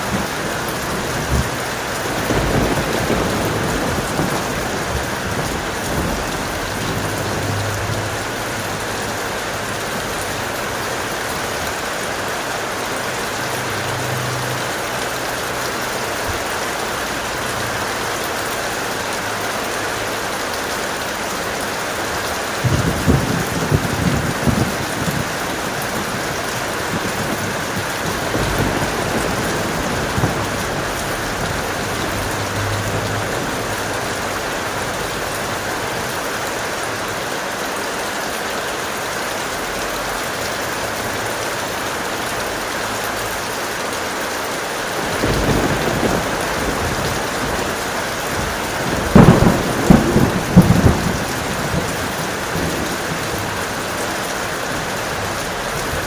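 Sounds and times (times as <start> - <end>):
thunder rumbling: 0.0 - 15.0, 22.0 - 36.7, 44.9 - 56.0
heavy rain falling: 0.0 - 56.0.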